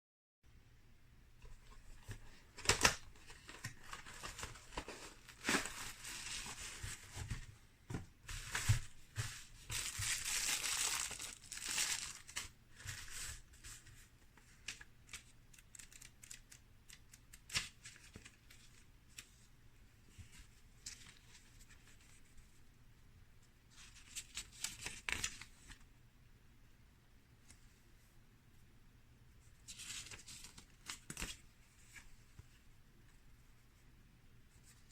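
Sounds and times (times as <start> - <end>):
packaging crinkling and tearing: 9.7 - 12.5.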